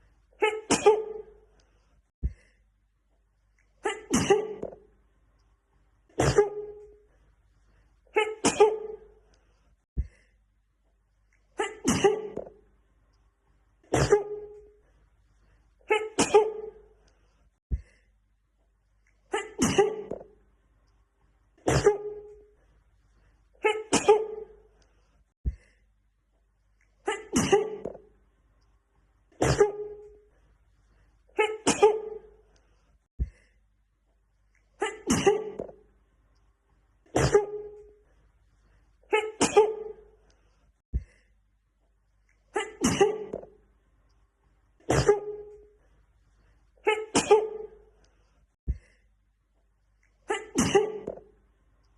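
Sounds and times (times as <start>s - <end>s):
woman sneezing: 0.4s - 1.4s, 3.8s - 4.8s, 6.1s - 6.9s, 8.1s - 9.1s, 11.6s - 12.5s, 13.9s - 14.6s, 15.9s - 16.8s, 19.3s - 20.2s, 21.6s - 22.3s, 23.6s - 24.6s, 27.0s - 28.0s, 29.4s - 30.1s, 31.4s - 32.3s, 34.8s - 35.8s, 37.1s - 37.8s, 39.1s - 40.1s, 42.5s - 43.4s, 44.8s - 45.6s, 46.8s - 47.8s, 50.2s - 51.2s.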